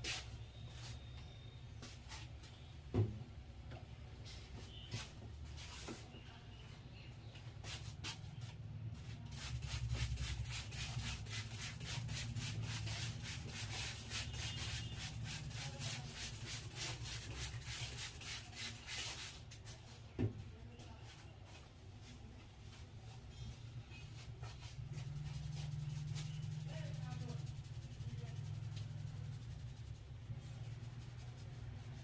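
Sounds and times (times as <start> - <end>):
hands rubbing hair and scalp: 24.2 - 32.0.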